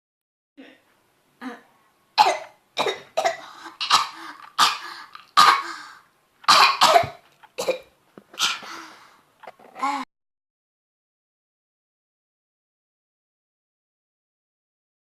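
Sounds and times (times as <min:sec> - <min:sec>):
person coughing: 0:02.2 - 0:05.9, 0:06.5 - 0:08.9.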